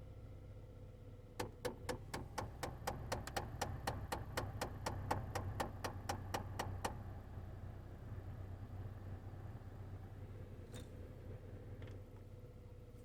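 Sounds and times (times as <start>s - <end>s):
sharp clicking from heating system: 1.4s - 7.0s.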